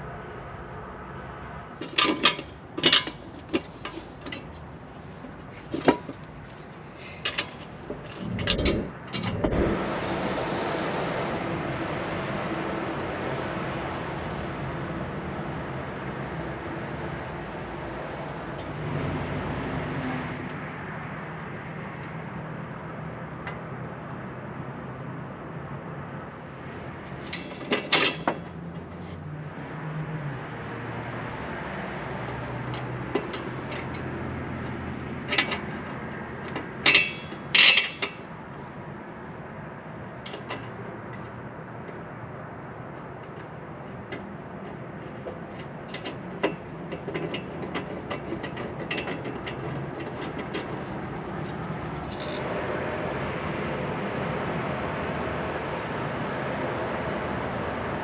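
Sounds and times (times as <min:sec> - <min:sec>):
metal tools clanking: 0:07.1 - 0:09.8, 0:27.2 - 0:28.5, 0:36.9 - 0:38.2, 0:45.6 - 0:52.5
steady low hum: 0:07.8 - 0:10.7.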